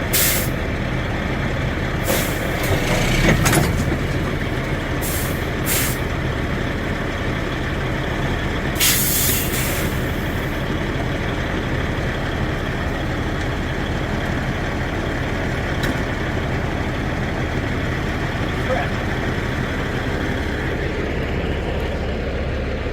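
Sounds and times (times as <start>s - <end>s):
diesel truck engine running: 0.0s - 22.9s
air brake hiss: 0.1s - 0.5s, 2.0s - 2.5s, 5.0s - 6.0s, 8.8s - 10.2s.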